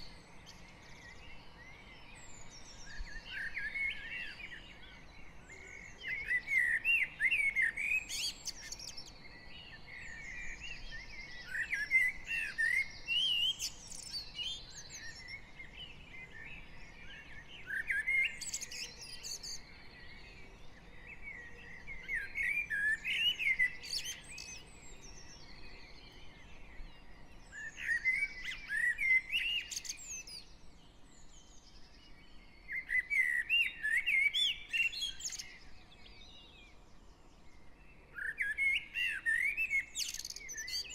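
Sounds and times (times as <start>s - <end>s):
faint birdsong: 0.0s - 40.9s.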